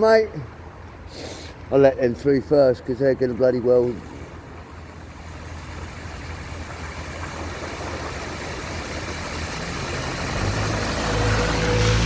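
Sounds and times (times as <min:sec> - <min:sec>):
rush of water pushed aside: 0:03.9 - 0:12.0
car engine hum: 0:04.3 - 0:12.0.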